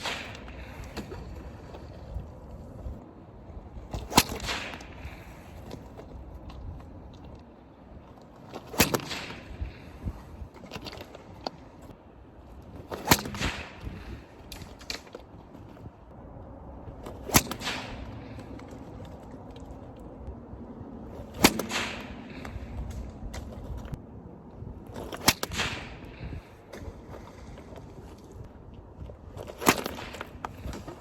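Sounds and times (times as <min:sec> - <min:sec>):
sling cracking like a whip: 0:00.0 - 0:01.1, 0:04.0 - 0:05.4, 0:08.5 - 0:10.0, 0:12.9 - 0:15.1, 0:17.2 - 0:18.8, 0:21.3 - 0:23.5.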